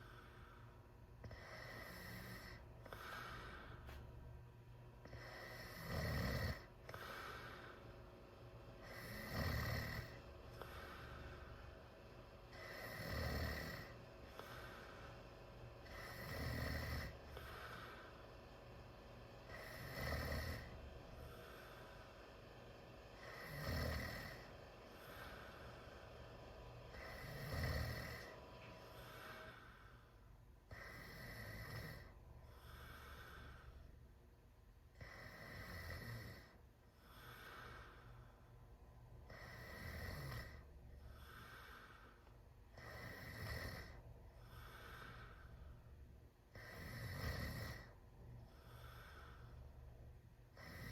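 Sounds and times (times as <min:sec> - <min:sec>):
loud snoring: 0:01.2 - 0:03.4, 0:05.0 - 0:07.7, 0:08.8 - 0:11.3, 0:12.5 - 0:14.8, 0:15.8 - 0:18.0, 0:19.4 - 0:21.8, 0:23.2 - 0:25.7, 0:26.9 - 0:28.4, 0:30.7 - 0:33.5, 0:35.0 - 0:37.8, 0:39.3 - 0:41.8, 0:42.7 - 0:45.3, 0:46.5 - 0:48.0, 0:50.5 - 0:50.9.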